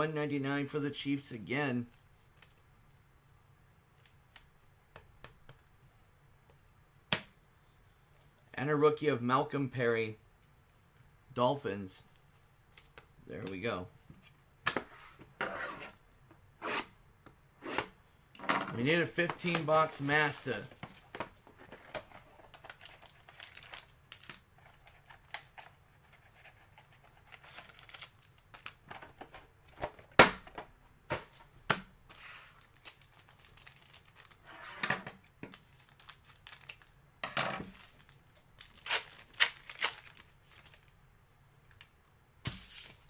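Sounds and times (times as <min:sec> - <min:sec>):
cards being handled: 0:18.8 - 0:21.3, 0:42.5 - 0:43.0
card wrappers crinkling and tearing: 0:19.0 - 0:21.0, 0:22.2 - 0:29.2, 0:32.2 - 0:34.5, 0:35.5 - 0:37.0, 0:37.6 - 0:41.0.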